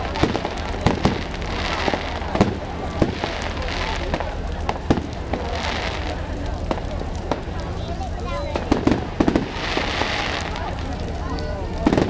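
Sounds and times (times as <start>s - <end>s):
continuous noisy background: 0.0s - 12.0s
fireworks bangs: 0.0s - 12.0s.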